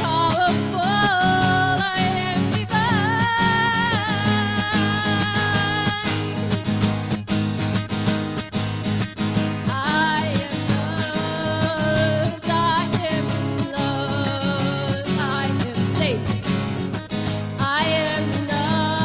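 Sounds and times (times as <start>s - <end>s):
person singing: 0.0s - 6.5s, 9.7s - 16.4s, 17.6s - 19.0s
strummed acoustic guitar: 0.0s - 19.0s.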